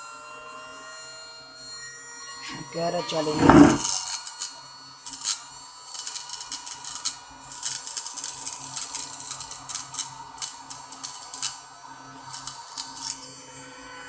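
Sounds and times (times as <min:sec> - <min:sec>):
irregular clicks and crackles: 0:06.0 - 0:11.6, 0:12.3 - 0:13.3.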